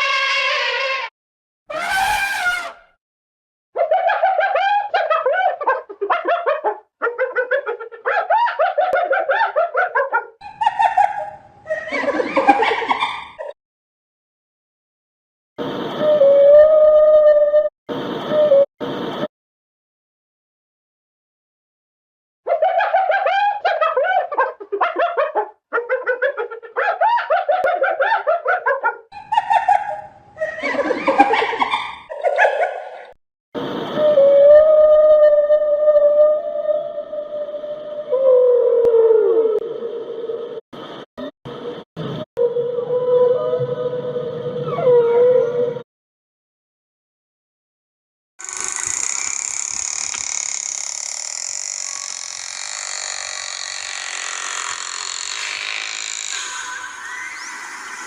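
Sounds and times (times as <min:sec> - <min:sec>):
harsh animal calls: 0:01.7 - 0:02.9
high rising-and-falling animal calls: 0:01.7 - 0:02.9.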